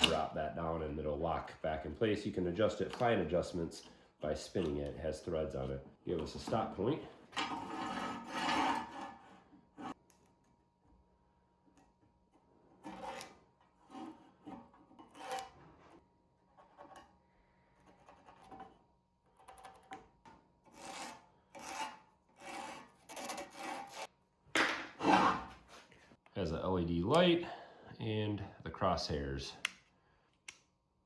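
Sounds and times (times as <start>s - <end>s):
metal scraping and rubbing: 6.3s - 10.0s, 20.7s - 24.1s, 25.0s - 25.8s.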